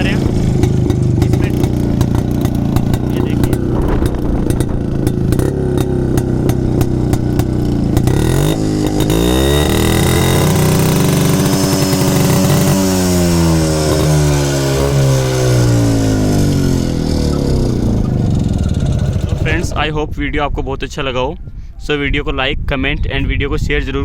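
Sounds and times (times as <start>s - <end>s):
motorcycle engine idling and revving: 0.0s - 19.9s.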